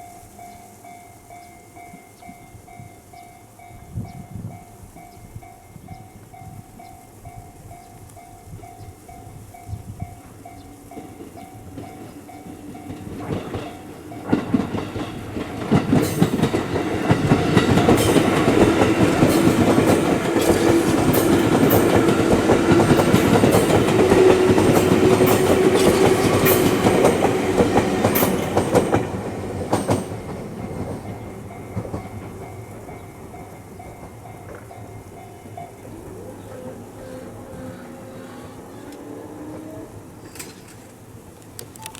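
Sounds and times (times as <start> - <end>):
train wheels clacking over rail joints: 10.9 - 35.5.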